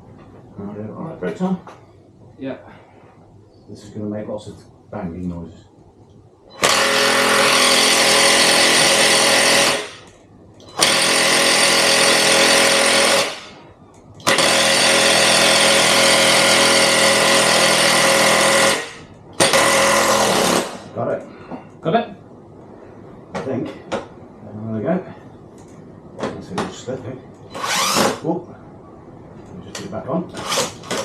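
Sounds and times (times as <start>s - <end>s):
impact driver hammering: 6.6s - 10.0s, 10.8s - 13.6s, 14.2s - 20.9s.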